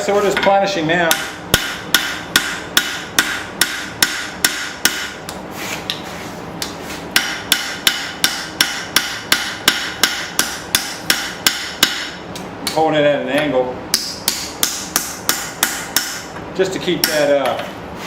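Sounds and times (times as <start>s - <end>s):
hammer blows on anvil: 6.6s - 12.8s.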